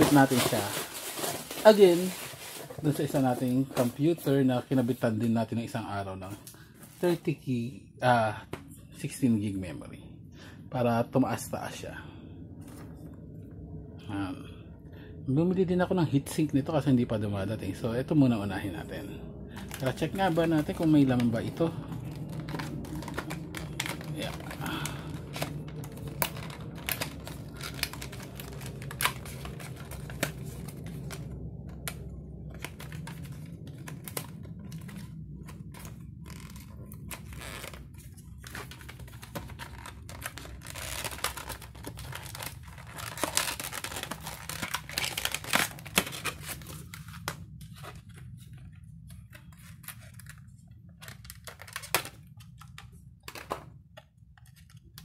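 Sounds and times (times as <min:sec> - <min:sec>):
packaging tearing and crinkling: 0:00.0 - 0:04.9, 0:19.5 - 0:53.6
low steady hum: 0:00.0 - 0:55.0.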